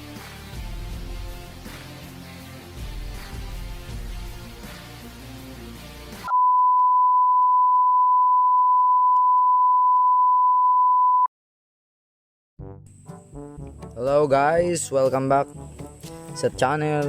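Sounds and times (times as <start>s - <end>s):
background music: 0.0s - 6.3s, 12.6s - 17.0s
steady electronic beep: 6.3s - 11.3s.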